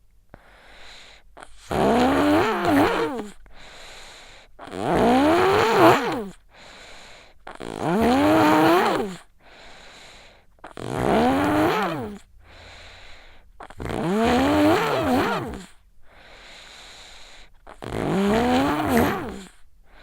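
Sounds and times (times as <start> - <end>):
faint breathing: 0.3 - 1.7, 3.3 - 4.7, 6.4 - 7.6, 9.2 - 10.9, 11.7 - 20.0
child snoring: 0.4 - 20.0.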